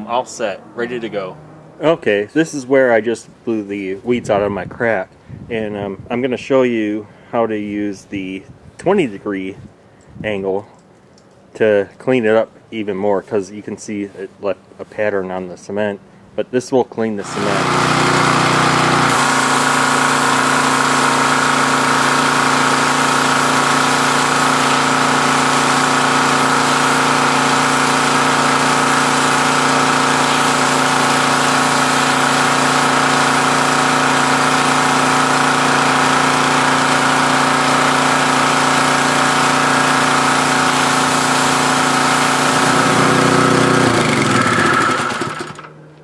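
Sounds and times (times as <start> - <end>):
water spray hissing on cement: 17.2 - 43.5
pressure washer engine running: 17.2 - 45.8.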